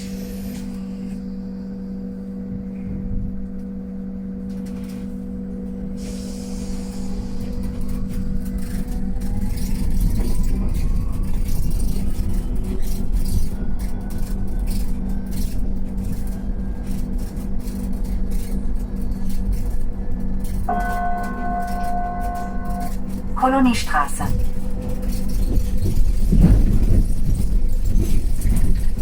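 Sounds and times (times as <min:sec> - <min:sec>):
road rumble: 0:00.0 - 0:29.0
rattles and knocks: 0:07.5 - 0:29.0.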